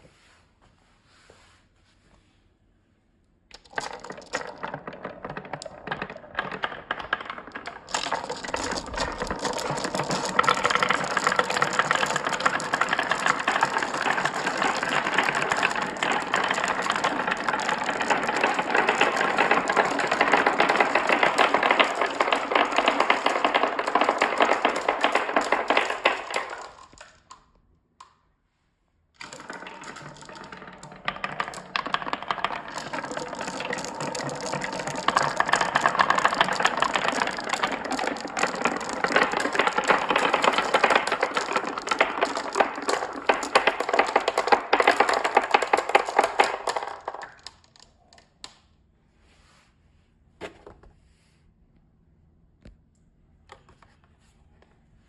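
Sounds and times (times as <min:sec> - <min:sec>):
marbles clattering down track: 0:03.5 - 0:27.4, 0:29.2 - 0:48.6.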